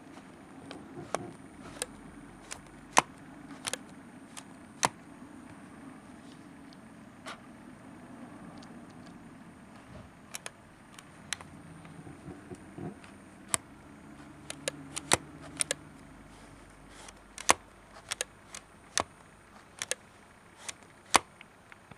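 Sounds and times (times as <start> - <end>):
faint low hum: 0.0 - 21.9
zoom lens clicking: 1.0 - 5.0, 19.7 - 20.0.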